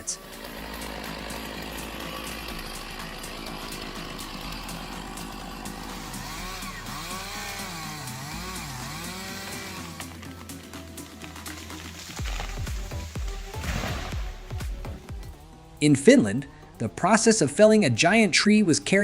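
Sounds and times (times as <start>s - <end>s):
chainsaw revving while cutting: 0.0s - 15.9s
background music: 0.0s - 19.0s.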